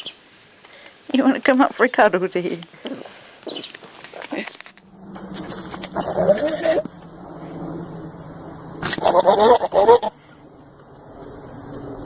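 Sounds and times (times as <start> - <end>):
animal call with wavering pitch: 5.4 - 7.0, 8.8 - 10.2.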